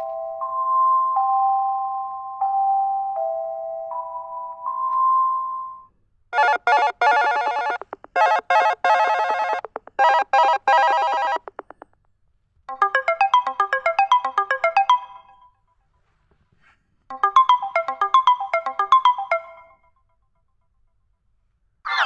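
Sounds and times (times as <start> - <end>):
phone ringtones: 6.4 - 11.6, 12.7 - 15.4, 17.1 - 19.8.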